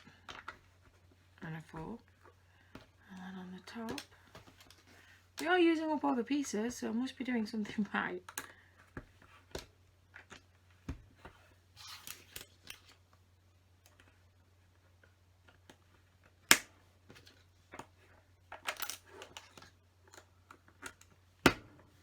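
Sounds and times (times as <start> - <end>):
plastic pieces clicking and rattling: 18.6 - 21.1.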